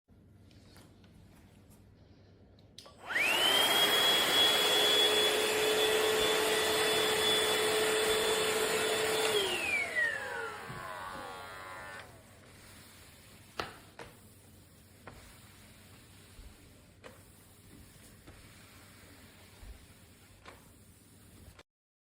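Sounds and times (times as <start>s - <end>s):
vacuum motor whining and hissing: 3.0s - 12.3s.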